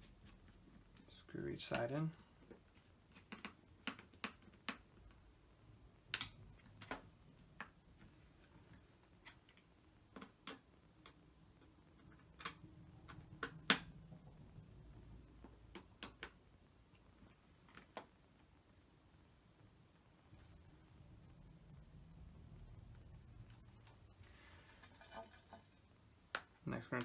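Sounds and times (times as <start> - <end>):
tool and parts handled: 24.6 - 25.9.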